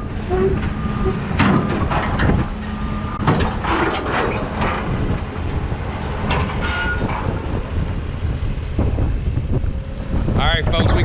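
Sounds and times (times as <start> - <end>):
truck rumbling: 0.0 - 11.0
metallic clanks and rattles: 0.1 - 8.0, 10.5 - 11.0.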